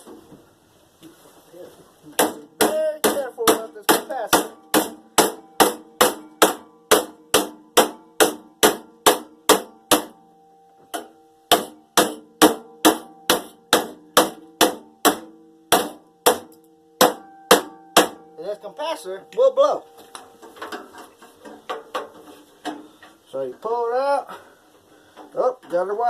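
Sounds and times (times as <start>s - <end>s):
hammer striking metal: 2.2s - 10.2s, 10.9s - 18.4s.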